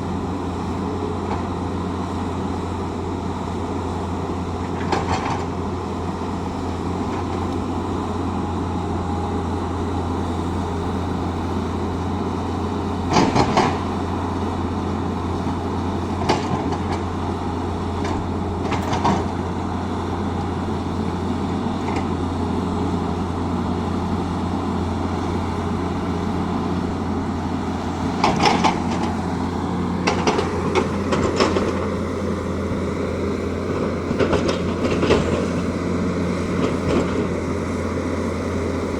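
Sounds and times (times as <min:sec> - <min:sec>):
excavator diesel engine running: 0:00.0 - 0:38.9.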